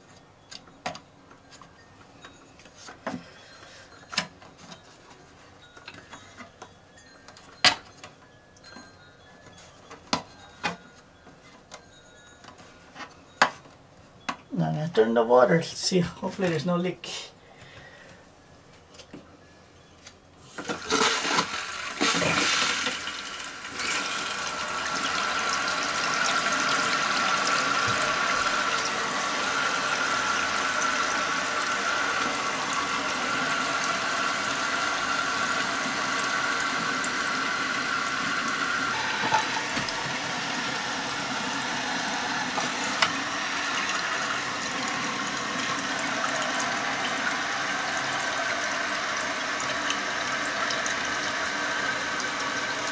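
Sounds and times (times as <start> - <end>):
toilet tank refilling: 20.6 - 52.9.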